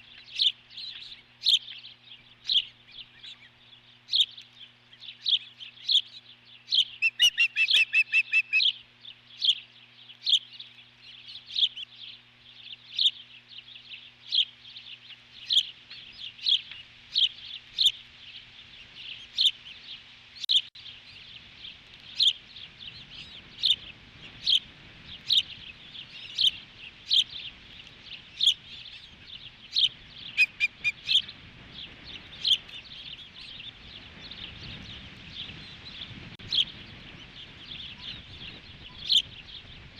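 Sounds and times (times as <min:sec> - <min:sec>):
bird high piercing chirps: 0:05.1 - 0:08.8, 0:29.7 - 0:31.3
wind rumble on microphone: 0:20.8 - 0:39.9.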